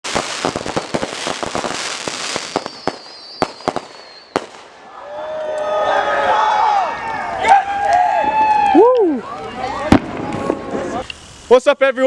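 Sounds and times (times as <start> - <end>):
fireworks bangs: 0.0 - 5.0, 9.8 - 11.5
fireworks crackling: 0.0 - 5.2, 8.3 - 12.0
high wavering firework whistle: 0.1 - 6.1.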